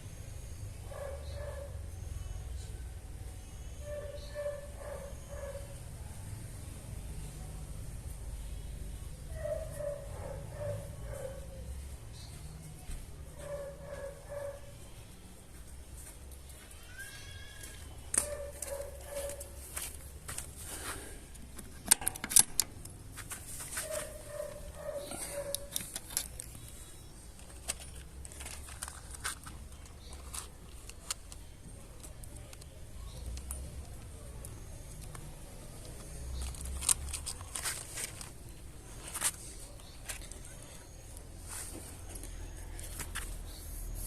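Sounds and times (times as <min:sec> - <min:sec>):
low outdoor background: 0:00.0 - 0:44.0
rifle metal clicks and rattles: 0:21.3 - 0:23.0, 0:25.0 - 0:35.2, 0:35.8 - 0:39.4.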